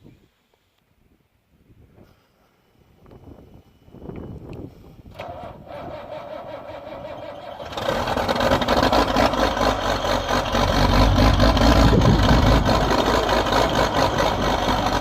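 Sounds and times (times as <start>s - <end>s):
diesel engine running: 6.5s - 15.0s.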